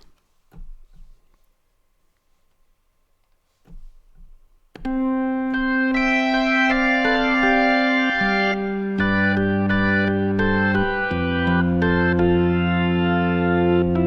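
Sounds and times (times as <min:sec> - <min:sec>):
electronic organ chords: 0:04.8 - 0:14.0.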